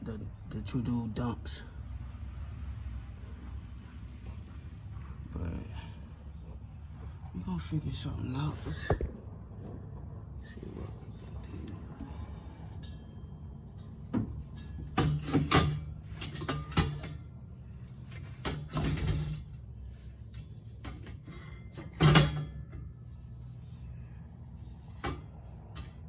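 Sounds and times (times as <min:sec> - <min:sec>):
steady low hum: 0:00.0 - 0:26.0
metal knocks and scrapes: 0:08.7 - 0:26.0.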